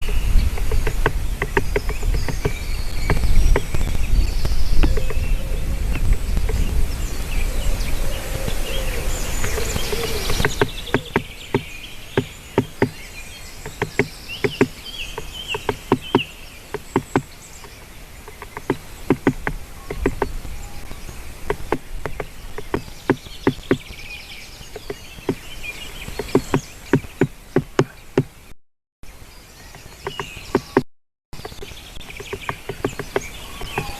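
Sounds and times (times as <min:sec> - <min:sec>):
woodpecker pecking on wood: 0:00.0 - 0:06.6, 0:09.3 - 0:20.5, 0:21.3 - 0:28.4, 0:29.8 - 0:33.9
wind noise rumble: 0:00.0 - 0:11.8.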